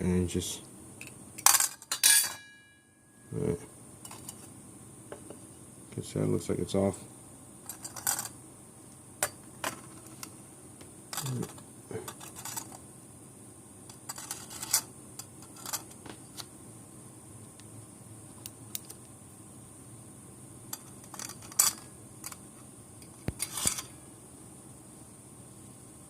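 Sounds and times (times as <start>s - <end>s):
faint steady hiss: 0.0s - 26.0s
small metal parts clinking: 1.4s - 2.4s, 7.7s - 8.4s, 11.1s - 12.8s, 14.0s - 16.0s, 20.7s - 22.4s.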